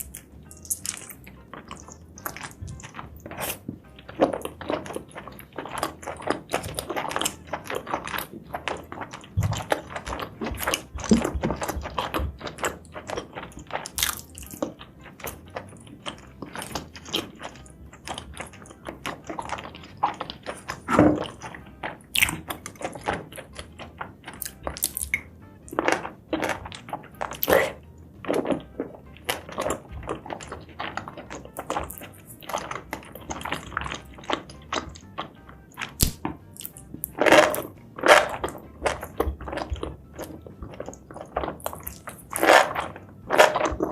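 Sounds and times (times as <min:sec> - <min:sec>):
person chewing food: 0:00.0 - 0:43.9
wet mouth clicks: 0:26.4 - 0:27.8.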